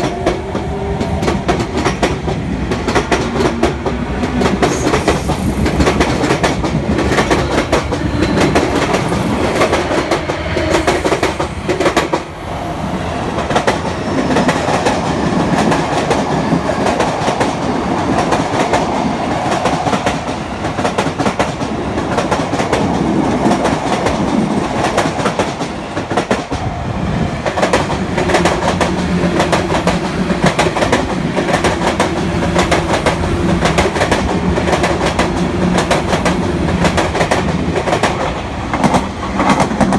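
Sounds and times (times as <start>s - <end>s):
train wheels clattering over rail joints: 27.5s - 39.9s.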